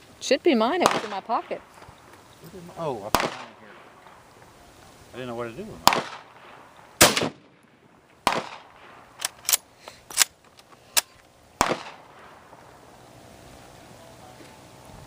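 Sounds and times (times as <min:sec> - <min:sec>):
rifle gunshots: 0:00.8 - 0:01.8, 0:02.9 - 0:04.2, 0:05.8 - 0:10.3, 0:11.6 - 0:12.6.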